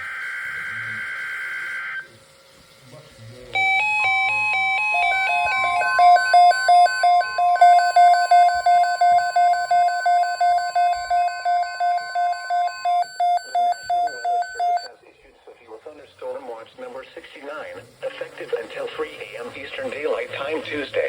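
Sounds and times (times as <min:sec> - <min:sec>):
steady warning tone: 0:00.0 - 0:02.2, 0:03.6 - 0:14.9
rapid electronic beeps: 0:03.6 - 0:14.9.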